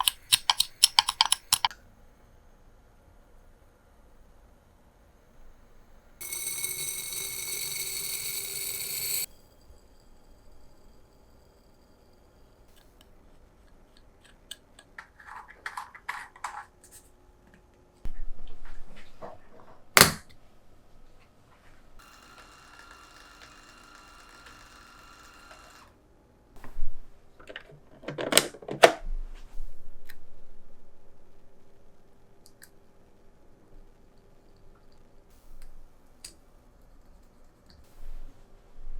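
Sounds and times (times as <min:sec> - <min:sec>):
clicks and taps on hard surface: 0:00.0 - 0:01.7
buzzing whir: 0:06.2 - 0:09.3.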